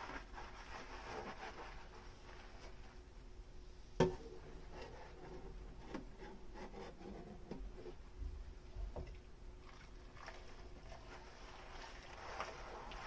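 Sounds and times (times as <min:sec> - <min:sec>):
soft scrubbing: 0:00.0 - 0:03.2, 0:09.6 - 0:13.0.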